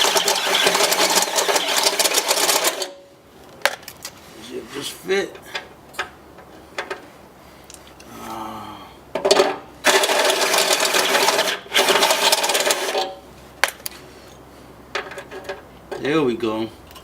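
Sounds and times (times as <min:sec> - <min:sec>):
power drill drilling metal: 0:00.0 - 0:03.0, 0:09.8 - 0:13.2.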